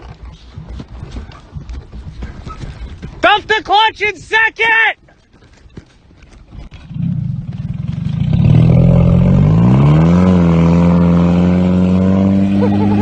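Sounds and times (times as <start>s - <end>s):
car engine starting and revving: 6.8s - 13.0s.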